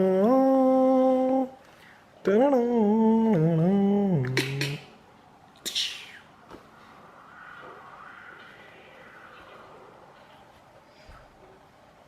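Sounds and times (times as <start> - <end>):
person humming a slow melody: 0.0 - 1.6, 2.2 - 4.9.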